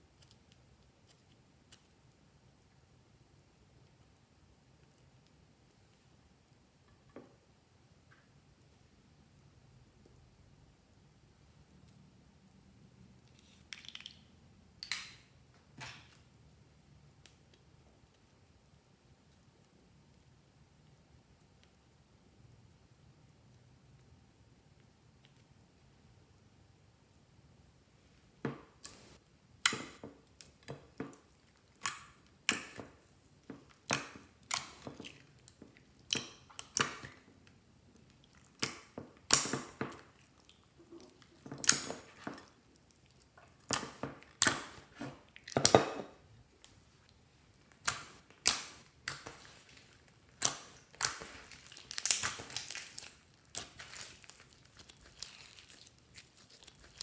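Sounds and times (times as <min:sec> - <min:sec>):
slime popping and crackling: 0:38.0 - 0:45.9, 0:47.6 - 0:57.0.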